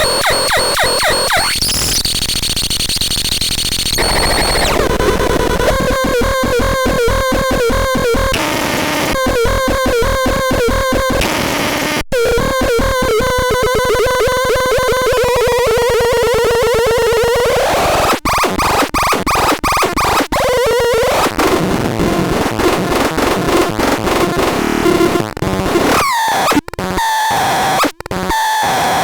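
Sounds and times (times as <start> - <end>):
pulsing synthesized buzzing tone: 3.7 - 6.5.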